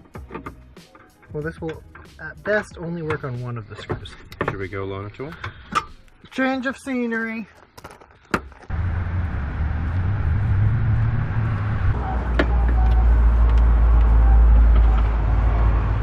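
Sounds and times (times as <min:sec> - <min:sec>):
car road and engine rumble: 0:08.3 - 0:16.0.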